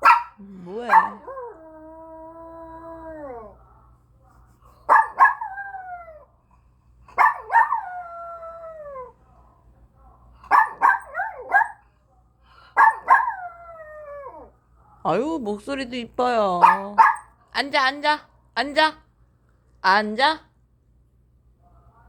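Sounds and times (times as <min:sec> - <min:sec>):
dog howling and yelping: 0:00.7 - 0:03.6, 0:04.9 - 0:06.3, 0:07.2 - 0:09.2, 0:12.8 - 0:14.5.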